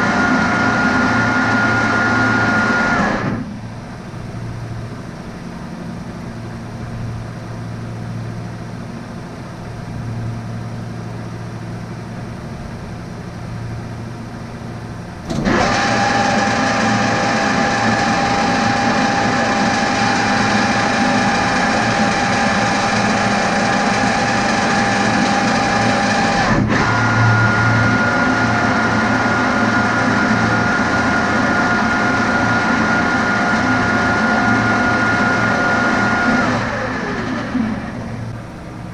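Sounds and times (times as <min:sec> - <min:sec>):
machine whine: 0:00.0 - 0:38.9
machinery humming: 0:00.0 - 0:38.9.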